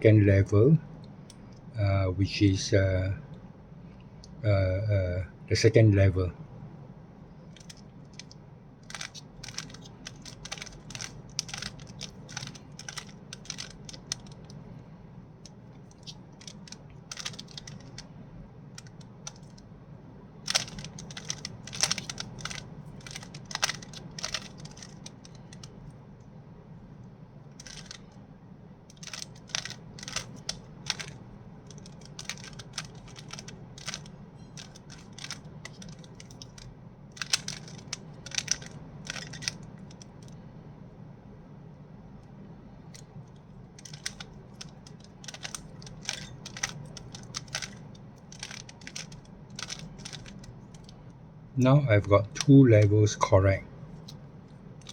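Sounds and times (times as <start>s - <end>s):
plastic puzzle cube clicking: 7.6s - 14.6s, 15.4s - 18.1s, 18.8s - 19.6s, 20.5s - 25.8s, 27.6s - 28.0s, 28.9s - 40.1s, 43.8s - 51.0s.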